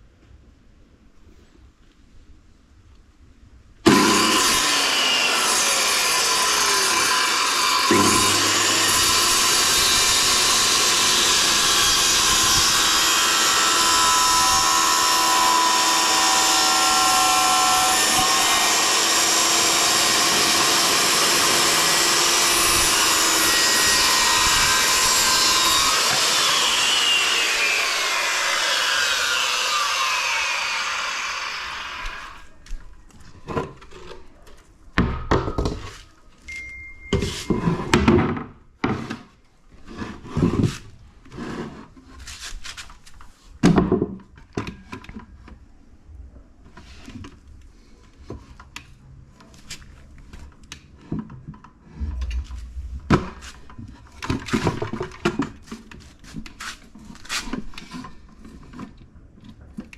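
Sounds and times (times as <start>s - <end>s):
power saw cutting plywood: 3.9s - 32.5s.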